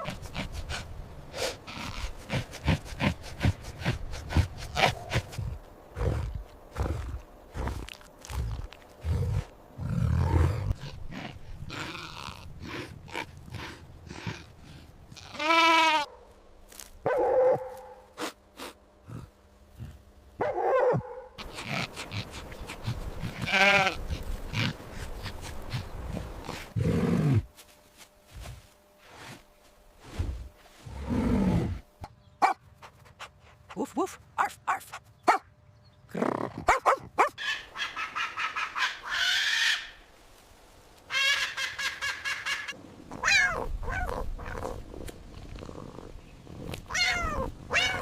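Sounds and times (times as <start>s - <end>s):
livestock bleating: 15.2s - 16.1s, 23.4s - 24.0s.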